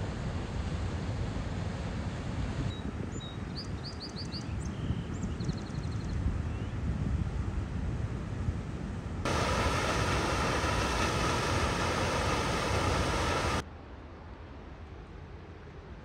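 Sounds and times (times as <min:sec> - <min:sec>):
waterfall rushing: 0:09.3 - 0:13.6.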